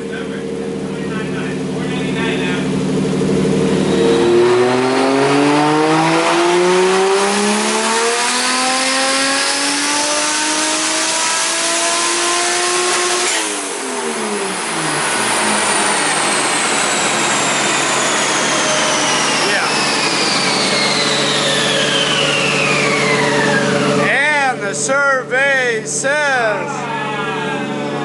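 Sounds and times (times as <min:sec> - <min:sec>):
turbo engine revving: 0:00.0 - 0:28.0
steady rush: 0:14.5 - 0:27.8
high whistle falling in pitch: 0:18.1 - 0:24.1.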